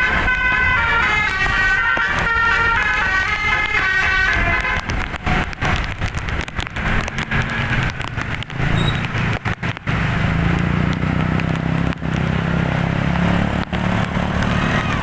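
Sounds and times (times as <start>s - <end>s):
bus engine humming: 0.0s - 15.0s
crackling noise: 0.0s - 15.0s.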